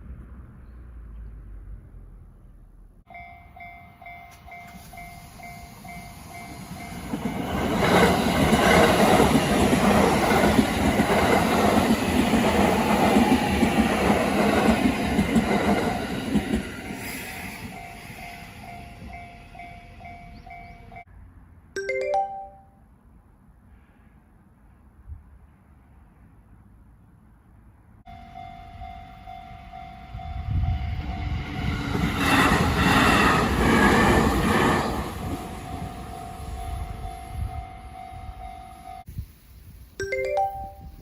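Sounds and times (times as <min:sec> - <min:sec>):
level crossing warning bell: 0:03.1 - 0:07.5, 0:17.7 - 0:21.1, 0:21.8 - 0:22.8, 0:28.1 - 0:31.5, 0:35.3 - 0:39.1, 0:40.0 - 0:41.0
train passing loudly: 0:03.1 - 0:21.1, 0:28.1 - 0:39.1.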